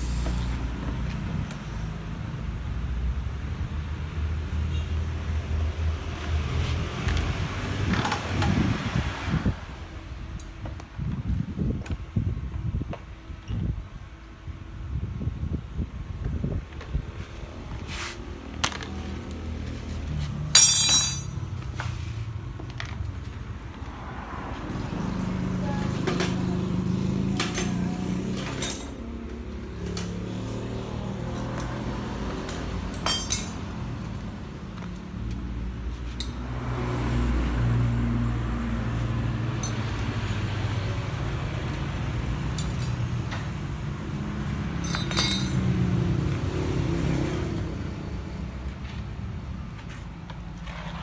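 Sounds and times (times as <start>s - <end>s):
metallic clinks of tools: 20.6s - 21.4s, 27.4s - 29.0s, 32.9s - 33.7s, 36.1s - 36.4s, 39.6s - 40.5s, 42.5s - 43.4s, 44.8s - 45.8s.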